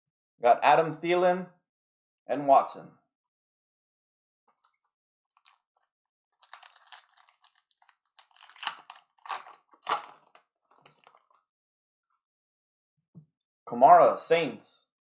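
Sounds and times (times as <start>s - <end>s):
card wrappers crinkling: 4.5s - 11.4s.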